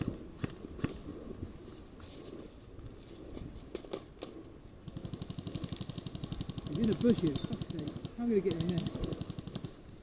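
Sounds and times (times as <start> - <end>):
fast rattle of ticks: 4.9 - 10.0.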